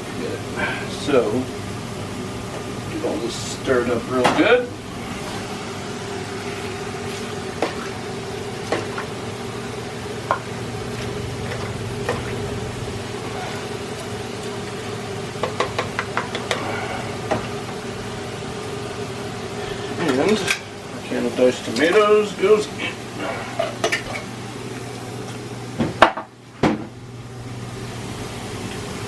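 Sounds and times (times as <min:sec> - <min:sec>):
induction cooktop hum: 0:00.0 - 0:29.0.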